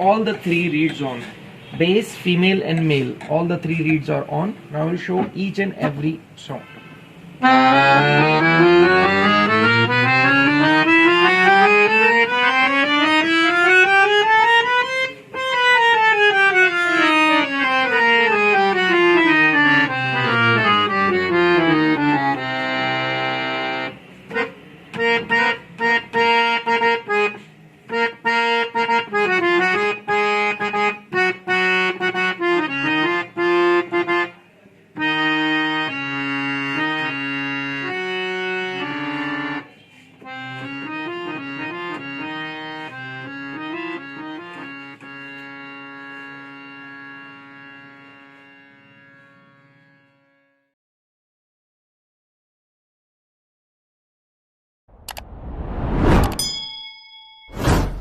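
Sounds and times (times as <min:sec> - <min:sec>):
reed harmonium playing: 0:07.0 - 0:50.6.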